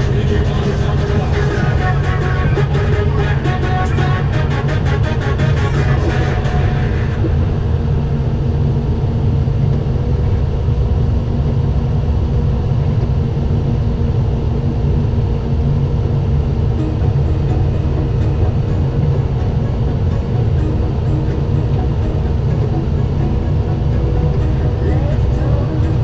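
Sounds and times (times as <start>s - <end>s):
background music: 0.0s - 9.0s, 14.8s - 26.0s
diesel engine low drone: 0.0s - 26.0s.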